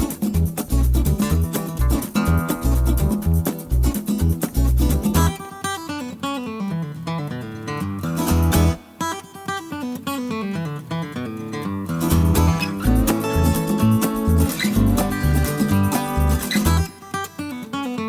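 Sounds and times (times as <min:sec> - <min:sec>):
deep bass: 0:00.0 - 0:05.3, 0:12.1 - 0:16.9
acoustic guitar picking melody: 0:00.0 - 0:18.0.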